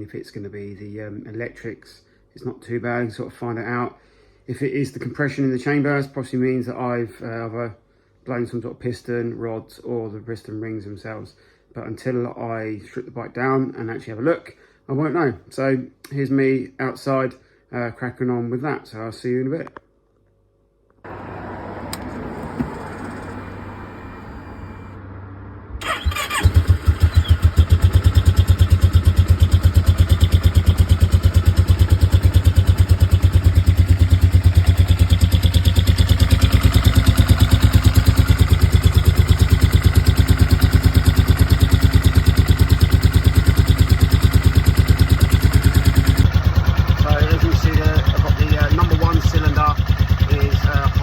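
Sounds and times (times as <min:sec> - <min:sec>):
motorcycle engine starting: 0:21.1 - 0:25.0, 0:25.8 - 0:51.0
motorcycle engine idling: 0:21.9 - 0:24.9, 0:25.8 - 0:51.0.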